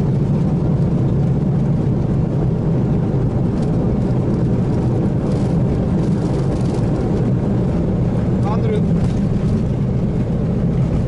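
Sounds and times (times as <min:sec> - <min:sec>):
aircraft engine noise: 0:00.0 - 0:11.0
wheels rumbling on runway: 0:00.0 - 0:11.0.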